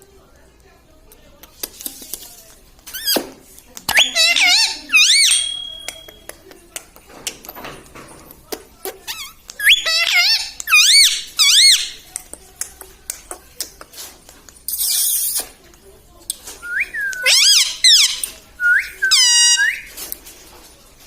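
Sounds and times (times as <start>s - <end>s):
parrot whistled calls: 3.9s - 6.1s, 9.2s - 12.0s, 16.7s - 19.9s.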